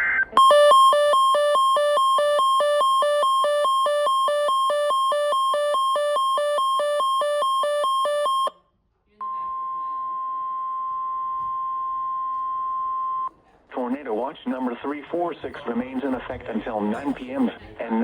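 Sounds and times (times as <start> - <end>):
two-tone electronic alarm beep: 0.0 - 8.6, 9.2 - 13.3.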